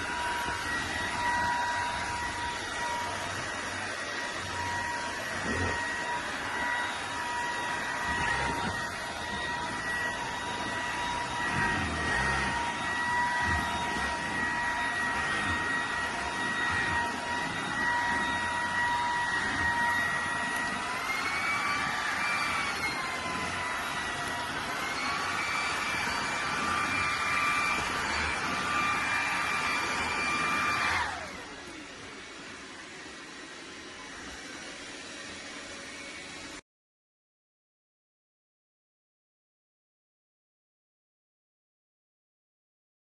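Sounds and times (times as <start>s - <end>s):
stick vacuum running: 0.0s - 36.6s.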